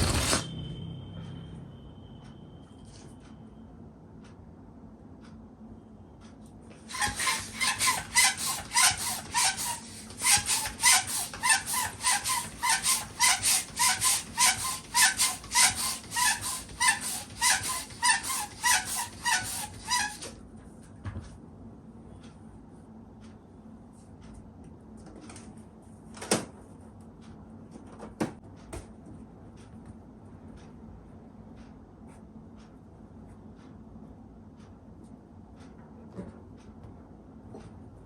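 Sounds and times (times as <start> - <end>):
hand pump rasping air: 0.0 - 0.5, 6.9 - 20.4.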